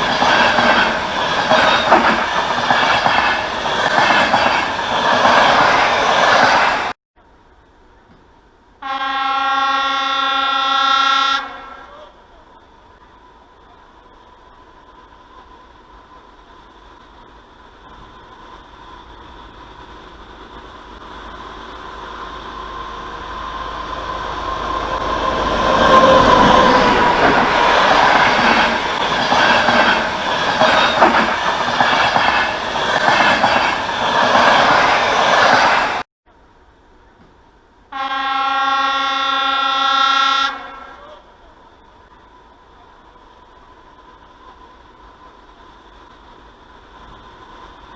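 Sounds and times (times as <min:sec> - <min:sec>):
train wheels clattering on rails: 0:00.0 - 0:06.9, 0:25.0 - 0:36.0
train horn blast: 0:08.8 - 0:12.2, 0:37.9 - 0:41.2.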